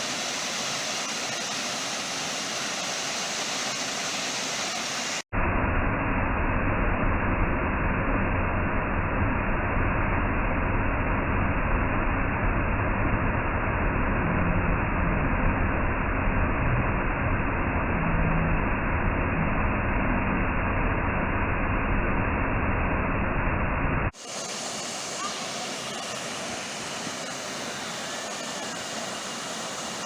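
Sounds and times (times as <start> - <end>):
waterfall rushing water: 0.0 - 5.2, 24.2 - 30.0.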